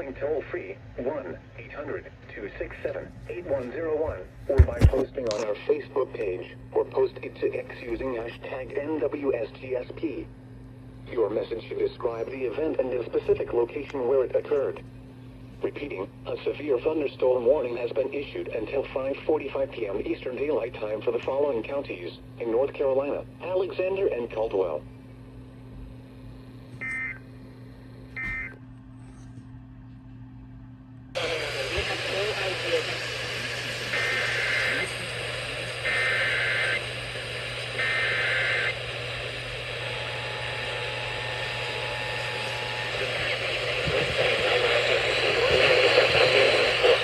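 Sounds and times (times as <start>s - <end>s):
voice broadcast through static: 0.0s - 10.3s, 31.2s - 47.0s
steady low hum: 0.0s - 47.0s
warbling digital data bursts: 35.6s - 36.8s, 37.8s - 38.8s.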